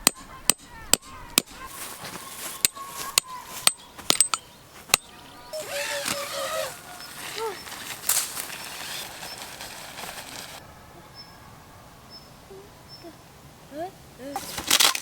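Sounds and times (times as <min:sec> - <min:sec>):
metallic clinks and taps: 0:02.6 - 0:04.5.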